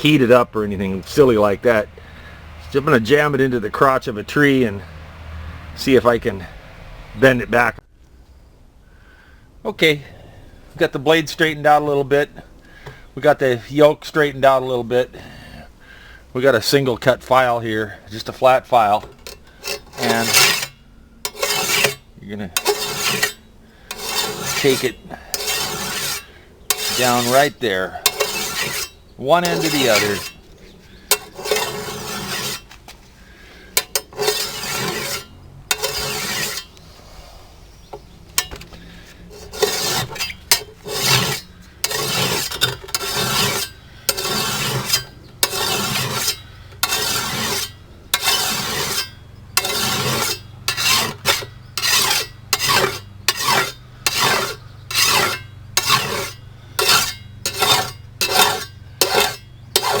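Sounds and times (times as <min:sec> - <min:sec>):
file rasping on steel blade: 0:19.2 - 0:30.4, 0:31.1 - 0:32.7, 0:33.8 - 0:36.8, 0:39.3 - 1:00.0.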